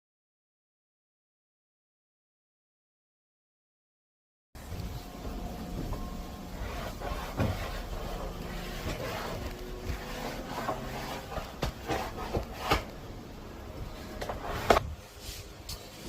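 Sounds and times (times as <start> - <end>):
low steady hum: 4.6 - 16.0.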